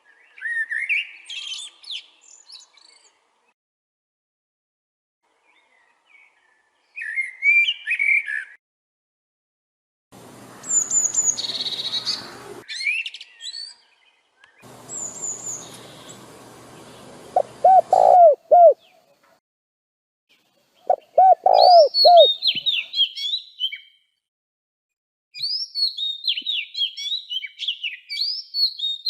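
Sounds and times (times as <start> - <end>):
birds chirping: 10.2 - 19.3, 20.8 - 23.8
background hiss: 14.7 - 18.6
low arched bird notes: 14.7 - 18.8, 20.9 - 22.8.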